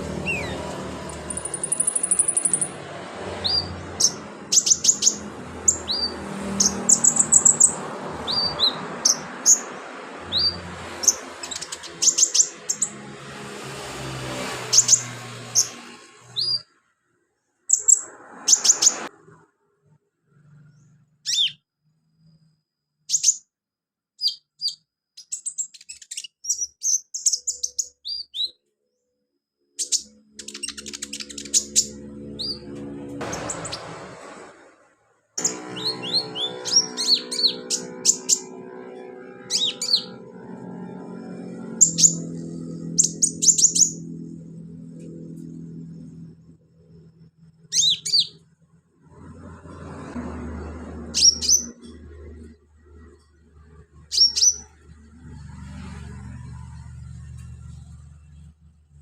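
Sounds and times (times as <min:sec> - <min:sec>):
bird chirping and trilling: 0:00.0 - 0:13.0, 0:14.6 - 0:16.7, 0:17.7 - 0:19.1, 0:20.4 - 0:23.6, 0:24.2 - 0:29.0, 0:29.8 - 0:33.9, 0:35.4 - 0:44.3, 0:46.9 - 0:48.4, 0:51.0 - 0:53.1, 0:53.9 - 0:55.0.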